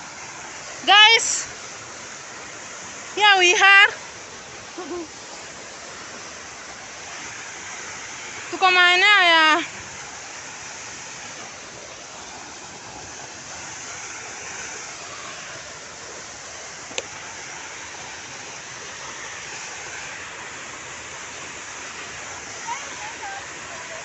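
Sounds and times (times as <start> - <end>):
waterfall rushing: 0.0 - 24.0.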